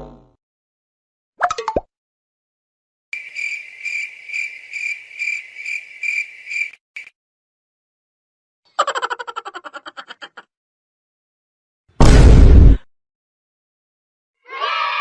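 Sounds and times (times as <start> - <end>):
cricket chirping: 3.2 - 7.1.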